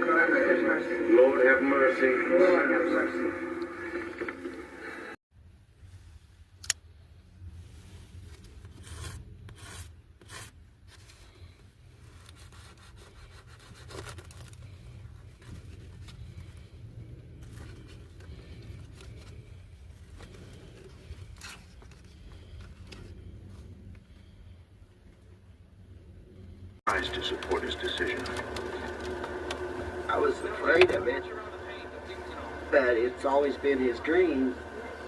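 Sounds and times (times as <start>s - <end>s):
rustling handling noise: 7.5s - 24.4s
low hum: 13.0s - 35.0s.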